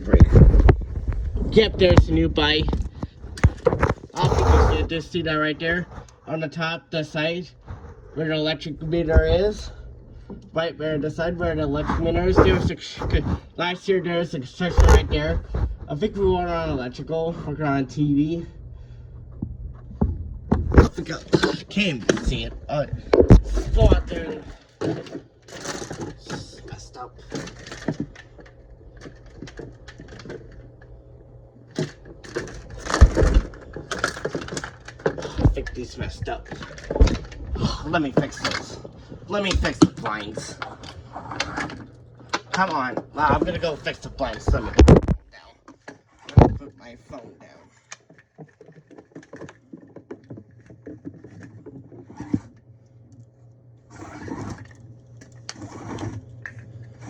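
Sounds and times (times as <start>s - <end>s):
clicks and rattles of handling: 0.0s - 4.4s, 20.0s - 31.0s, 31.7s - 52.6s
window blinds clicking and rattling: 23.7s - 30.6s, 31.7s - 37.5s.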